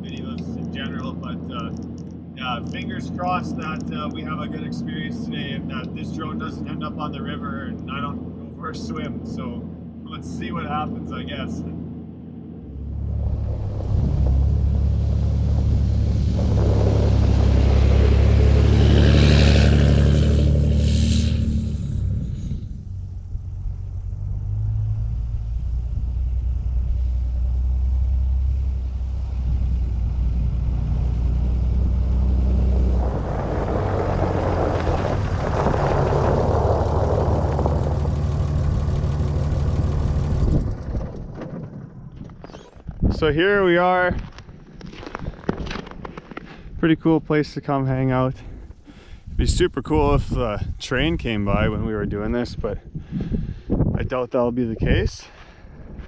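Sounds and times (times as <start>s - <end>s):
diesel truck engine droning: 0.0s - 42.4s.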